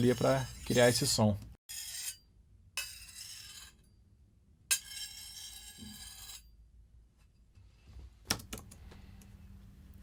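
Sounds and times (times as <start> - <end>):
knife scraping on sharpener: 0.0 - 3.9, 4.7 - 6.5.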